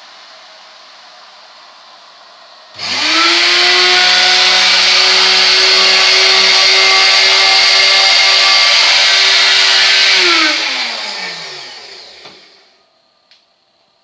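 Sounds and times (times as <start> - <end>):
machine motor high whine: 2.8 - 12.7.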